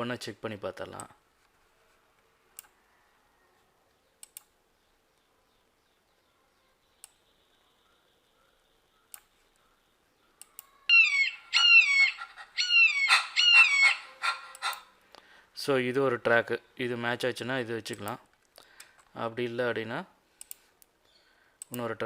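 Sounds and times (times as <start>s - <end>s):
faint sharp clicks: 3.9s - 4.6s, 7.0s - 7.2s, 10.4s - 10.7s, 20.4s - 20.9s, 21.6s - 21.9s
eagle calls: 10.9s - 15.0s.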